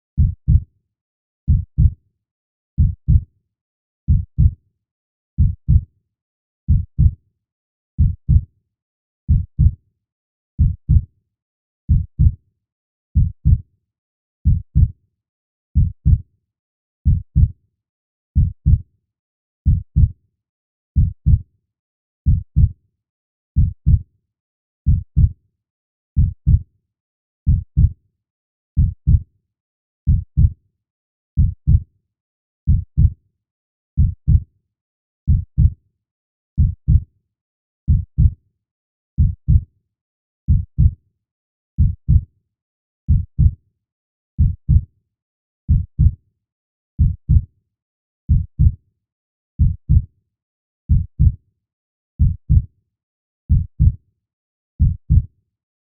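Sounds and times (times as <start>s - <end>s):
heartbeat thumps: 14.5s - 14.9s, 24.9s - 25.3s, 31.4s - 31.8s, 50.9s - 51.3s, 54.8s - 55.2s.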